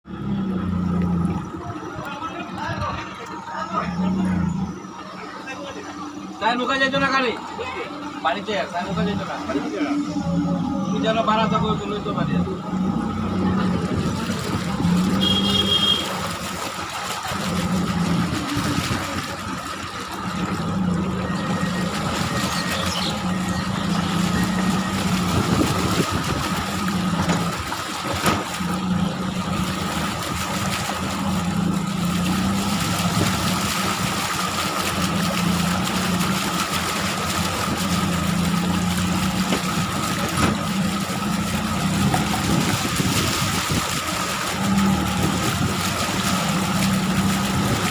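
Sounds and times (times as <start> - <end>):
motor engine running: 0.0 - 47.9.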